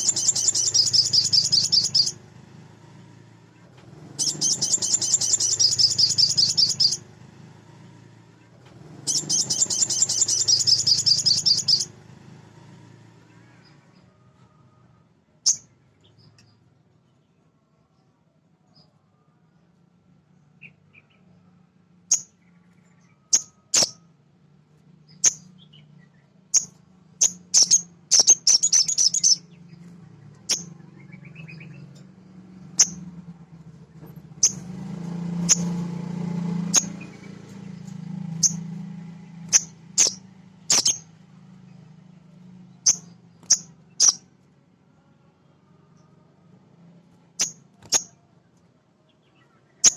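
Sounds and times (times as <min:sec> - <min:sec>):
bird chirping: 0:00.0 - 0:02.3, 0:04.0 - 0:07.1, 0:09.0 - 0:12.0, 0:15.4 - 0:18.0, 0:20.3 - 0:24.1, 0:25.0 - 0:33.1, 0:33.9 - 0:42.0, 0:42.7 - 0:44.3, 0:47.2 - 0:48.3, 0:49.0 - 0:49.9.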